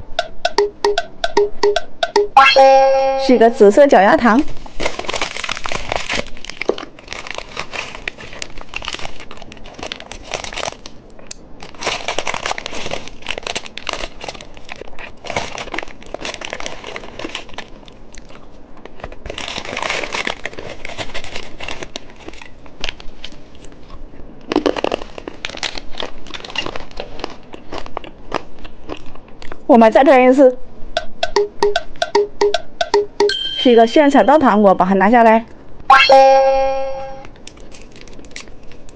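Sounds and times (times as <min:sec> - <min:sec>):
plastic packaging crinkling: 0:04.4 - 0:23.9, 0:24.5 - 0:29.0, 0:37.3 - 0:38.9.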